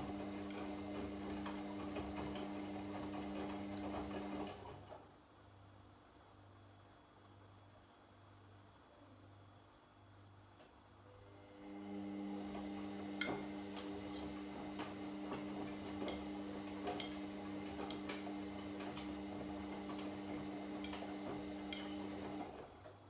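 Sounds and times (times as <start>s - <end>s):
washing machine motor humming: 0.0s - 4.6s, 11.3s - 22.6s.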